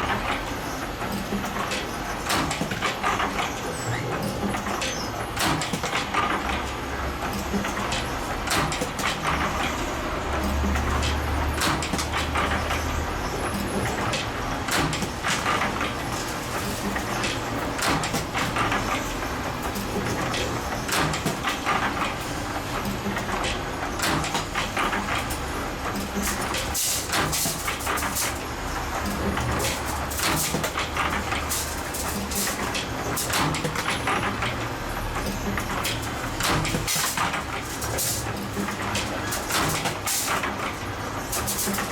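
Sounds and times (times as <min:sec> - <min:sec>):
sharp clicks and metallic knocks: 0:29.0 - 0:41.9.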